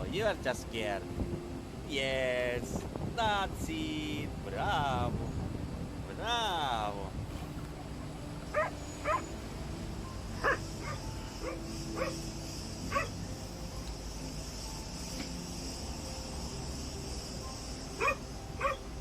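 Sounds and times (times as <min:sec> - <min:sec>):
steady background hiss: 0:00.0 - 0:19.0
dog barking: 0:08.5 - 0:09.2, 0:10.4 - 0:12.2, 0:12.9 - 0:13.1, 0:18.0 - 0:18.8.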